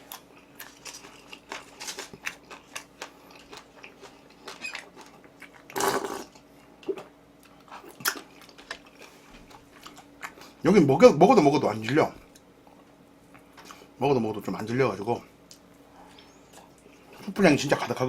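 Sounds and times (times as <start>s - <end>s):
chewing and biting food: 0.0s - 10.6s
crunch or slurp: 5.7s - 7.0s.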